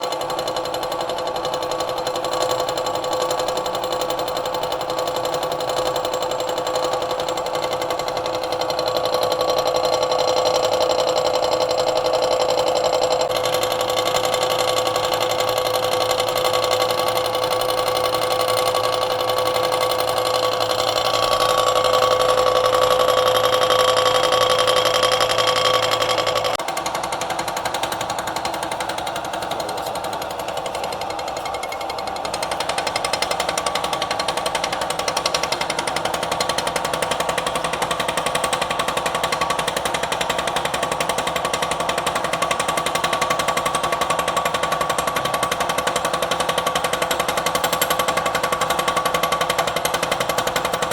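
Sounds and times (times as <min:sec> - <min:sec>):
milling machine whine: 0:00.0 - 0:50.6
cutter chatter: 0:06.5 - 0:41.3.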